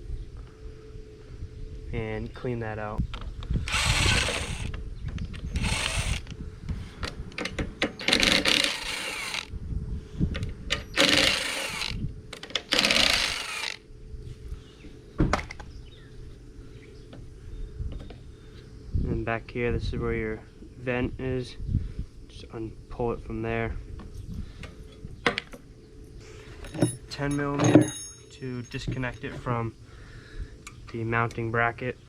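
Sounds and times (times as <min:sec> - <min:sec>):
power tool bursts: 0:03.7 - 0:04.7, 0:05.6 - 0:06.3, 0:08.0 - 0:09.5, 0:10.9 - 0:12.0, 0:12.7 - 0:13.8
metal parts clicking and knocking: 0:07.4 - 0:09.5.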